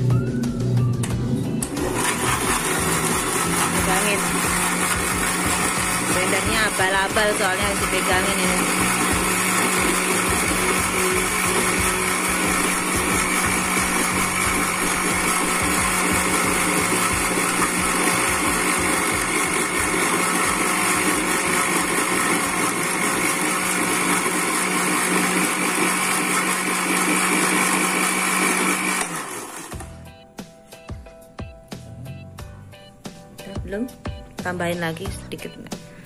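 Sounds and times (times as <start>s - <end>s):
electric blender running: 1.0s - 30.0s
blender motor winding down: 1.6s - 30.0s.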